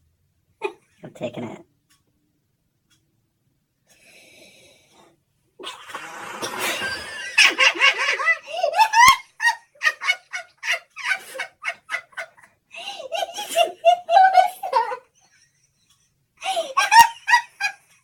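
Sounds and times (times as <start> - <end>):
person laughing hard: 5.6 - 14.7, 16.4 - 17.8.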